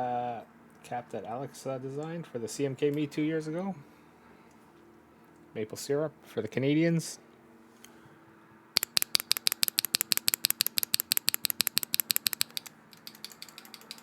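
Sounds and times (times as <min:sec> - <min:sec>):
keyboard switch clacking: 0:08.8 - 0:14.0.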